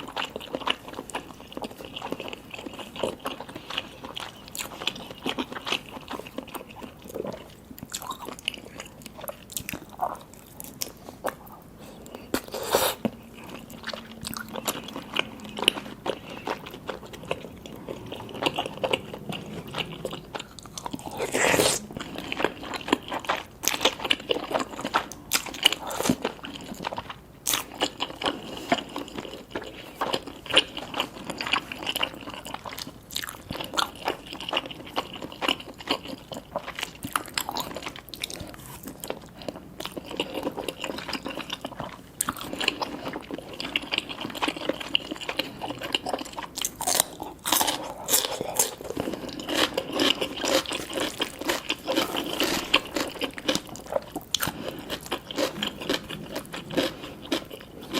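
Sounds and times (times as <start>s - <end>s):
wet slurping and chewing: 0.0s - 57.9s.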